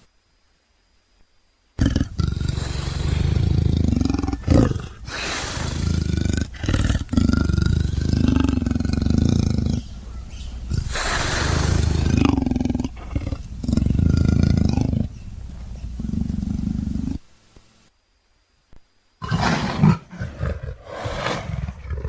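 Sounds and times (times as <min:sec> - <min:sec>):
big cat roaring: 0:01.8 - 0:10.0, 0:10.6 - 0:15.2, 0:15.8 - 0:17.2.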